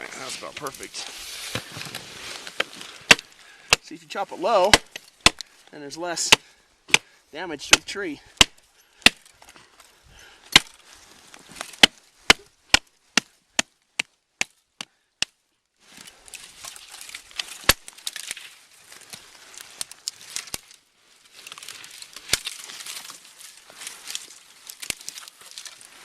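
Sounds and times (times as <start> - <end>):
rustling and crunching: 0.0 - 7.2, 7.8 - 14.7, 15.7 - 26.0
hatchet chopping a tree: 3.0 - 3.9, 4.6 - 5.5, 6.2 - 7.1, 7.7 - 9.3, 10.5 - 10.8, 11.6 - 15.4, 17.6 - 18.2.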